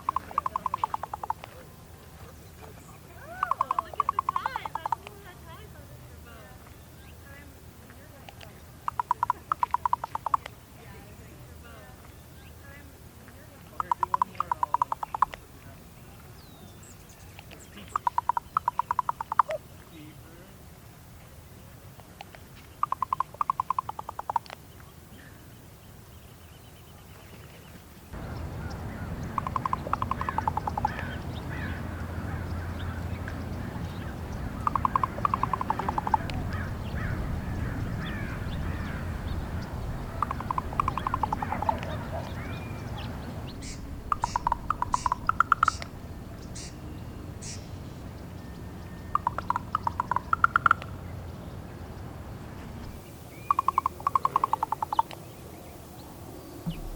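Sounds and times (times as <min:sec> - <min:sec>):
raven clicking calls: 0:00.0 - 0:01.7, 0:03.2 - 0:05.3, 0:08.2 - 0:10.6, 0:13.7 - 0:15.5, 0:17.3 - 0:19.6, 0:22.1 - 0:24.7, 0:28.1 - 0:51.1, 0:52.8 - 0:55.4.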